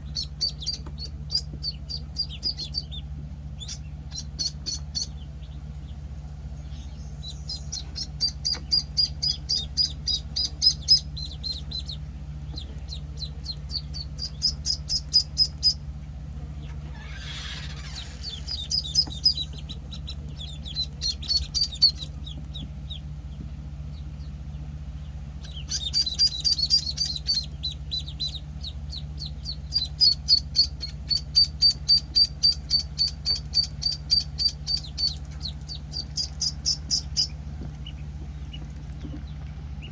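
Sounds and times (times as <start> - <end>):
ducklings peeping: 0.0 - 39.9.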